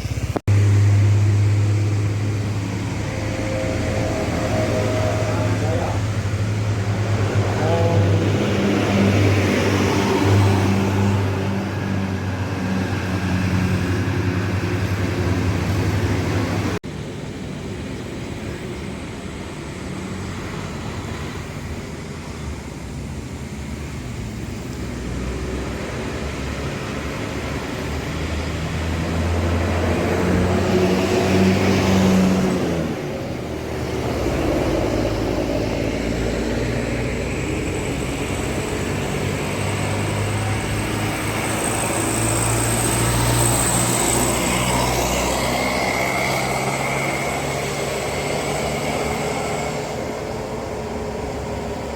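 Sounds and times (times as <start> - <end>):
heavy vehicle engines passing: 0.0 - 51.9
quieter traffic: 0.0 - 51.9.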